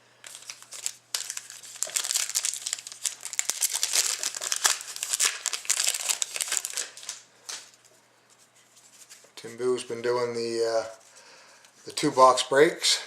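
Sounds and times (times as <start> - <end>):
wrapper crinkling: 0.2 - 7.9.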